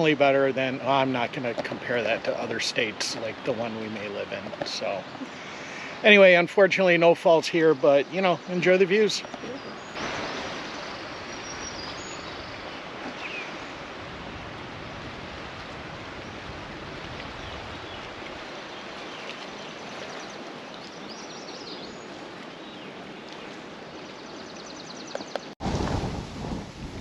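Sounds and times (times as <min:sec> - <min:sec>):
flowing water rushing: 0:00.0 - 0:27.0
faint bird chirps: 0:09.4 - 0:13.8.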